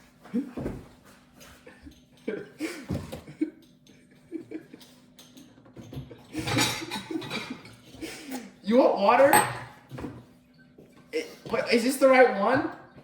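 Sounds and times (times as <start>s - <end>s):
low voices and chuckling: 1.6s - 5.0s
kitchen utensils clicking: 4.8s - 7.9s, 9.1s - 9.8s.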